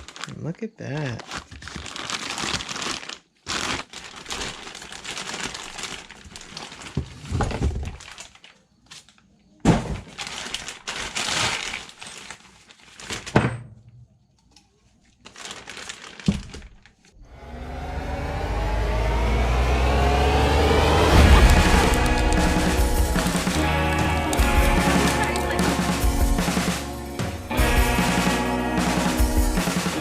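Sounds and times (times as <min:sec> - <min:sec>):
crinkling and rustling: 0:00.0 - 0:17.2.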